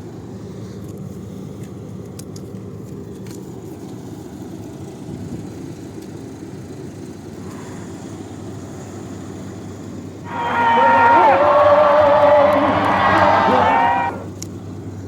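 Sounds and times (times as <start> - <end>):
low motor hum: 7.5 - 15.0.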